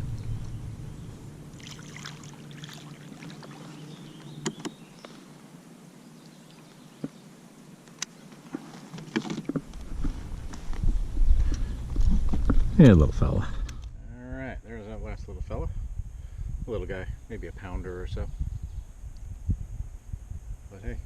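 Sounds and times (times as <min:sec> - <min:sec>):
steady low hum: 0:00.0 - 0:21.0
handling noises in a boat: 0:02.6 - 0:05.4, 0:07.8 - 0:12.7.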